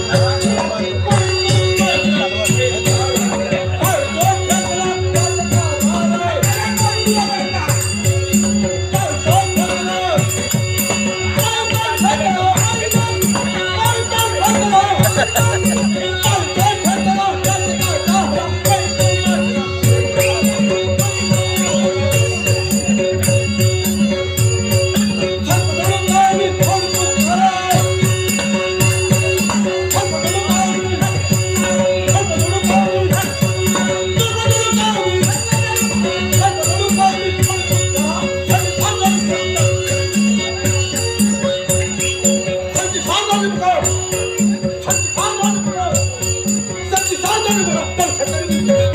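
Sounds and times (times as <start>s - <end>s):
metallic jingling percussion: 0.0s - 48.9s
steady held tones: 0.0s - 48.9s.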